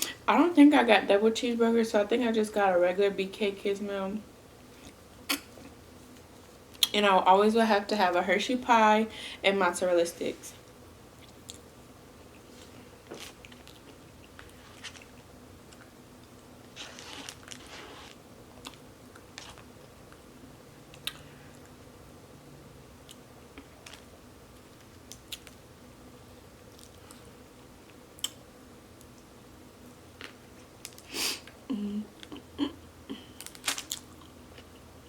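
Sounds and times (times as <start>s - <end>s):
person chewing and crunching: 13.1s - 20.3s.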